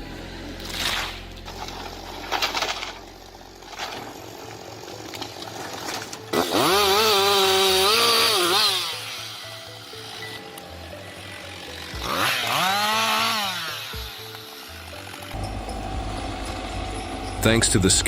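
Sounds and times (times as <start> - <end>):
chainsaw engine revving: 6.3 - 15.4.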